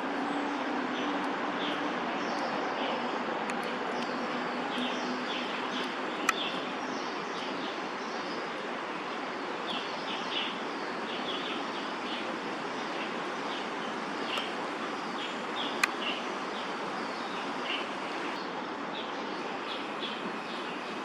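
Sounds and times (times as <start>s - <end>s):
distant city traffic hiss: 1.4s - 21.0s
small birds chirping: 3.5s - 8.6s, 9.6s - 21.0s.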